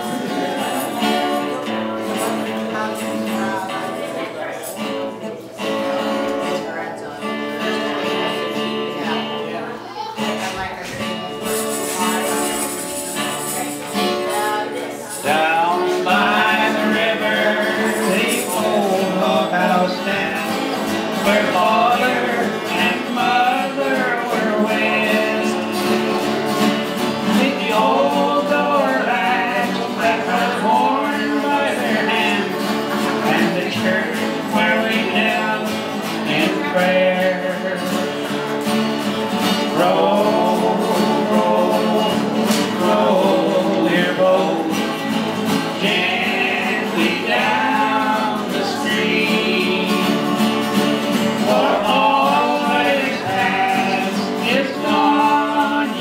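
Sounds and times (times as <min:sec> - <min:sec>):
person singing: 0:00.0 - 0:03.5, 0:11.5 - 0:38.7, 0:39.3 - 0:56.0
strummed acoustic guitar: 0:00.0 - 0:56.0.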